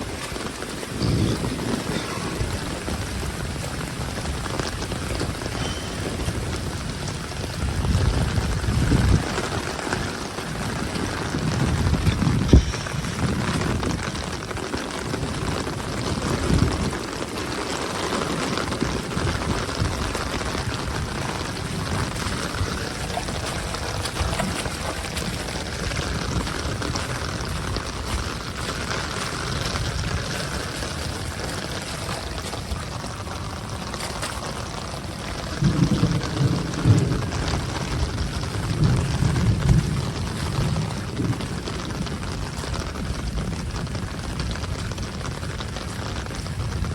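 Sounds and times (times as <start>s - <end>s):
low rumbles: 0.0s - 17.2s
heavy rain: 0.0s - 46.9s
runoff water pouring: 0.0s - 46.9s.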